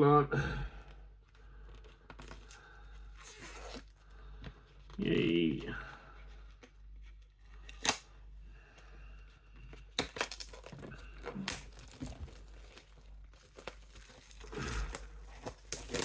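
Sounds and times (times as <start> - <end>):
packaging rustling and crinkling: 9.6 - 16.0.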